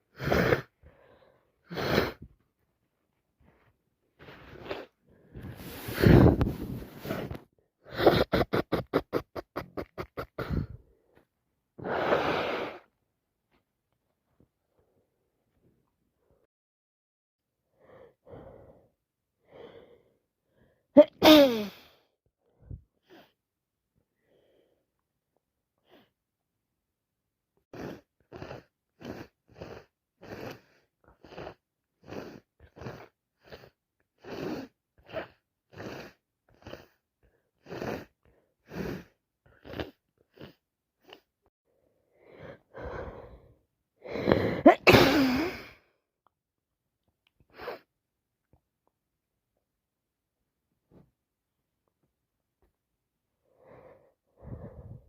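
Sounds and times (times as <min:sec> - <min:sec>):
quick breathy sniffles: 0:01.7 - 0:02.3, 0:04.2 - 0:10.8, 0:11.8 - 0:12.9
person sneezing: 0:21.0 - 0:21.9, 0:44.2 - 0:45.8.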